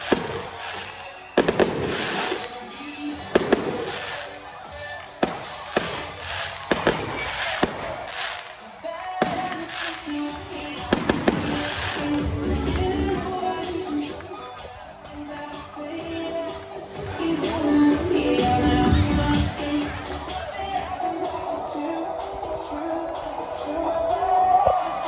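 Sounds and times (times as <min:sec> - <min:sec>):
fireworks bangs with crackle: 0:00.0 - 0:12.3
music playing: 0:00.0 - 0:25.0.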